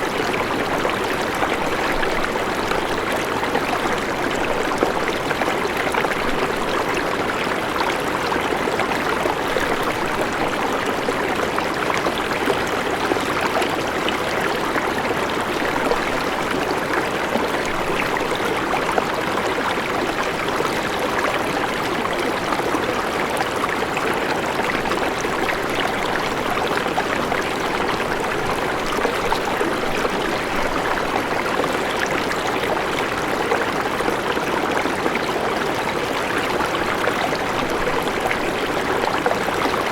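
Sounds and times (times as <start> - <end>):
river flowing over rocks: 0.0 - 39.9.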